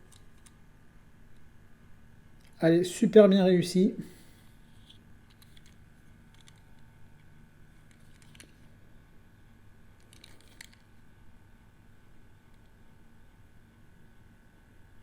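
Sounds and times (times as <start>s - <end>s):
steady low hum: 0.0s - 10.1s.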